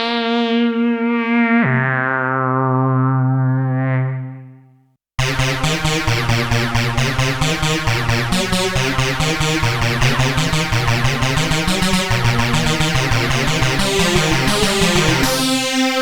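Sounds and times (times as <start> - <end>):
synthesizer held note: 5.2 - 16.0
synthesizer sequenced pulsing pattern: 5.2 - 16.0.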